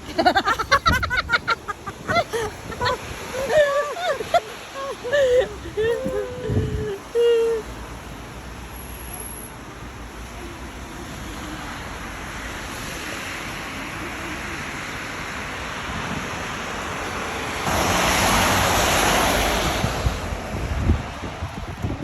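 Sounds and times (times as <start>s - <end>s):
wind blowing over microphone: 0.0s - 7.2s, 15.8s - 22.0s.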